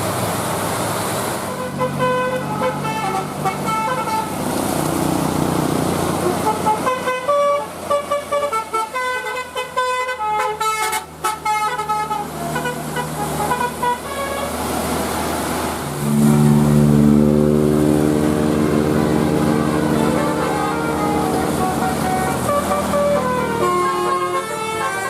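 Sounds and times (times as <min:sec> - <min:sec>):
musical bus horn melody: 0:01.5 - 0:04.4, 0:06.0 - 0:14.7, 0:15.9 - 0:25.0
low steady horn note: 0:15.9 - 0:25.0.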